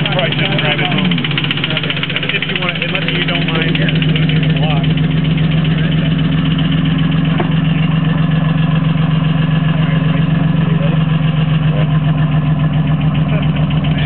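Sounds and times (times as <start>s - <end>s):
engine rod knock: 0.0s - 8.1s
car engine idling: 0.0s - 14.0s.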